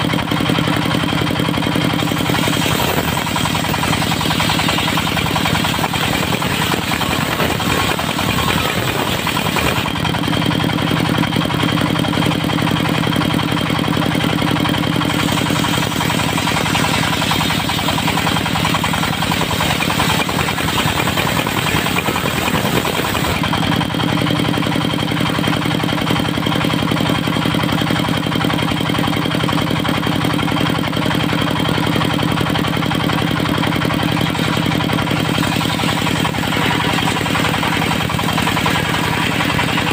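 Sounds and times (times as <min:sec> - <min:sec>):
diesel engine running sawmill: 0:00.0 - 0:39.9.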